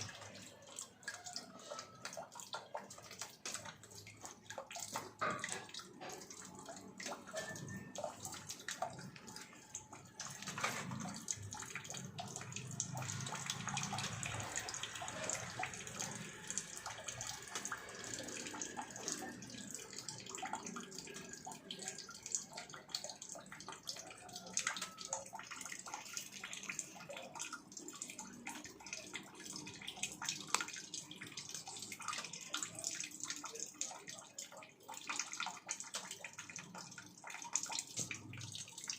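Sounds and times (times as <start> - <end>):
cat lapping water: 0.0 - 38.9
faucet water running: 0.0 - 38.9.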